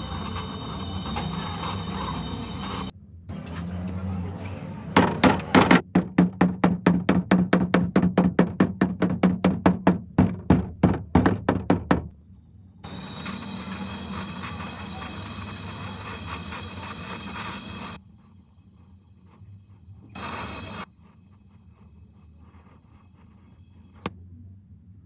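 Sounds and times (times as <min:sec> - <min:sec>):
steady hiss: 0:00.0 - 0:02.9, 0:12.8 - 0:18.0
thin high whine: 0:00.0 - 0:03.8, 0:12.8 - 0:18.0, 0:19.4 - 0:21.0
rapid hammer blows on metal: 0:05.0 - 0:12.1.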